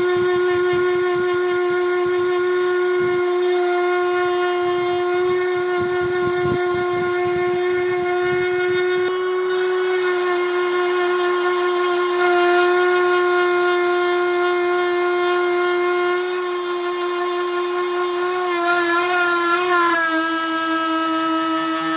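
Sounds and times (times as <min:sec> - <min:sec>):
electric sander on wood: 0:00.0 - 0:21.9.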